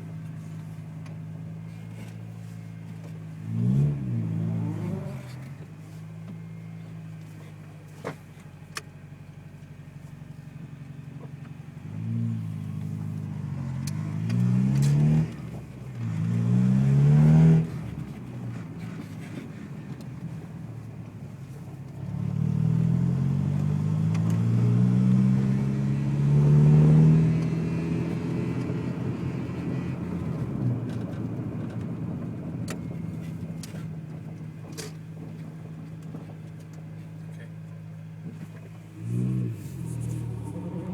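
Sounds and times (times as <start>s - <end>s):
car engine revving: 3.4s - 5.7s, 11.8s - 36.6s, 38.3s - 40.9s.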